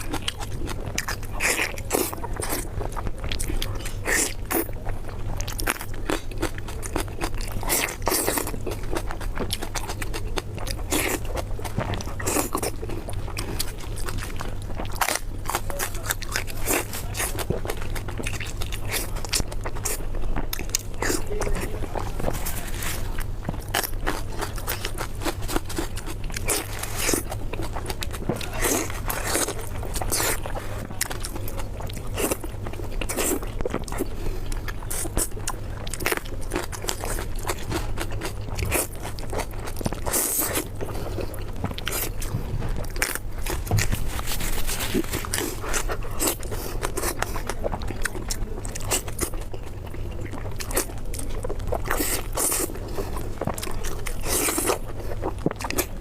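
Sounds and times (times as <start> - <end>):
steady low hum: 0.0 - 56.0
wet chewing: 0.0 - 56.0
crunchy bites: 5.5 - 49.8.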